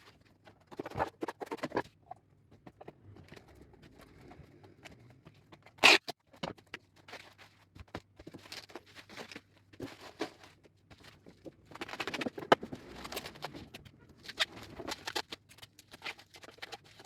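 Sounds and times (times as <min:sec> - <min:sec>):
packaging crackling and rustling: 0:08.2 - 0:17.0.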